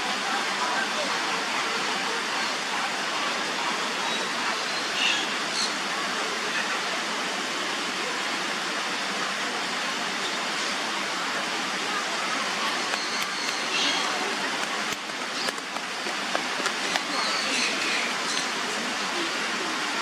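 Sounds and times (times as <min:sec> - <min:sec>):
water rushing: 0:00.0 - 0:20.0.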